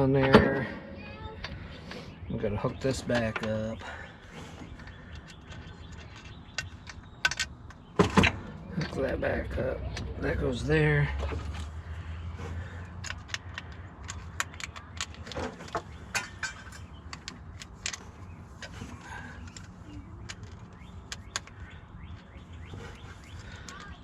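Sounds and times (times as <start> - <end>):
metal tools clicking and clinking: 13.0 - 21.6.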